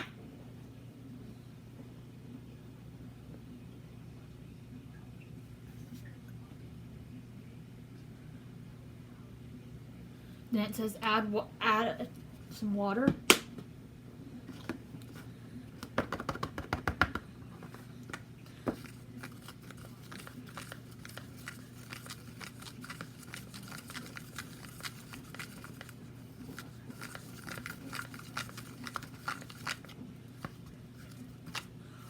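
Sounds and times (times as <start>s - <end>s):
slime stirring clicks and squishing: 18.8s - 31.7s.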